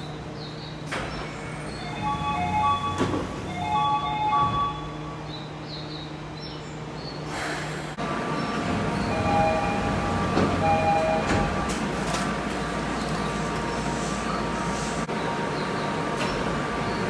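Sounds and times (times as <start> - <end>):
train whine: 0.0 - 6.4, 7.3 - 17.0
dissonant train door chime: 0.9 - 5.4, 9.0 - 14.5.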